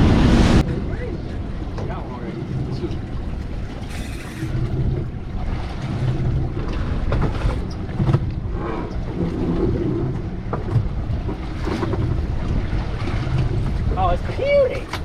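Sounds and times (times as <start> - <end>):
water slapping boat hull: 0.0 - 15.0
wind buffeting microphone: 0.0 - 15.0.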